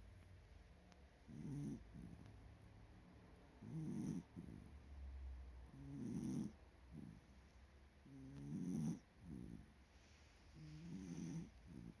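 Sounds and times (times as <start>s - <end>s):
dog snoring: 1.2s - 2.3s, 3.6s - 4.9s, 5.7s - 7.3s, 8.0s - 9.8s, 10.6s - 12.0s.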